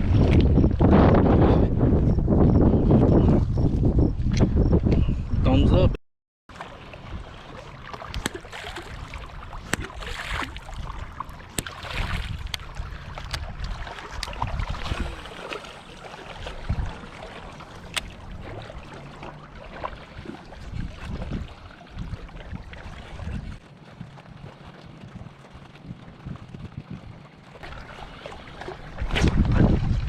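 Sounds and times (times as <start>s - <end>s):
wind on microphone: 0.0s - 6.0s, 7.0s - 30.0s
water lapping: 6.5s - 30.0s.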